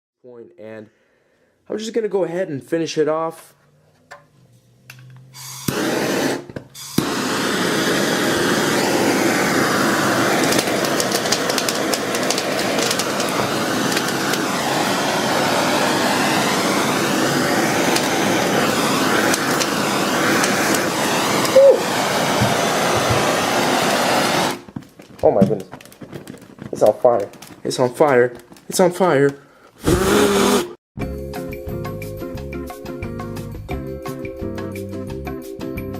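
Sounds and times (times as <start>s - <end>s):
gas torch flame hissing: 5.4s - 24.7s, 29.8s - 30.8s.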